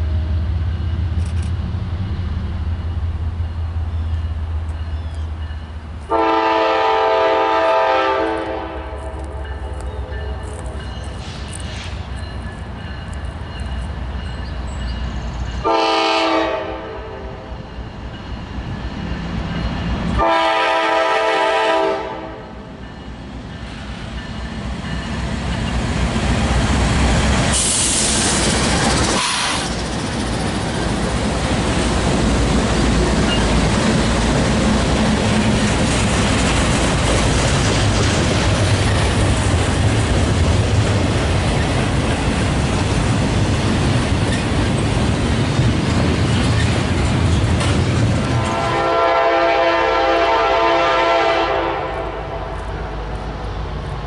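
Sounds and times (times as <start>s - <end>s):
train cars rumbling past: 0.0s - 54.0s
locomotive air horn: 6.1s - 9.4s, 15.6s - 17.5s, 20.2s - 22.6s, 29.2s - 29.7s, 48.3s - 52.7s.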